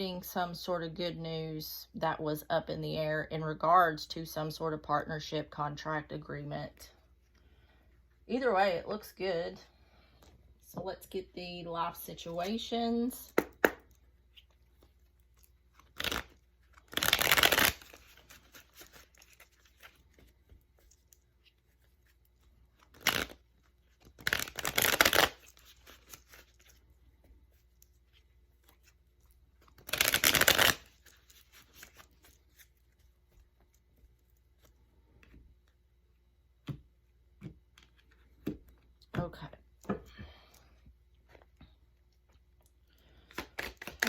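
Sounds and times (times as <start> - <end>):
cards being shuffled: 13.3 - 35.4, 43.2 - 44.0.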